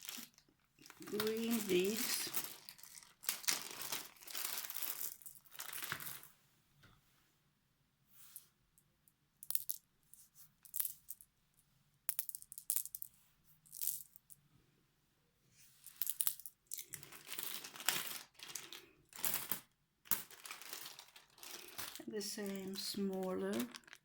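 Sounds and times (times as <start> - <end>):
plastic packets crinkling: 0.0 - 6.2, 16.8 - 24.0.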